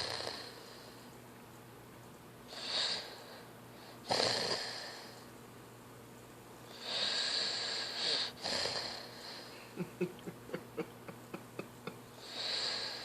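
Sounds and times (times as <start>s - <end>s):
person snoring: 6.8s - 9.5s, 12.2s - 13.0s.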